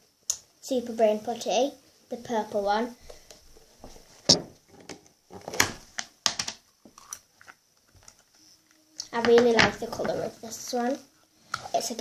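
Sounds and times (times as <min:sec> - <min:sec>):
quiet handling sounds: 0:03.0 - 0:12.0.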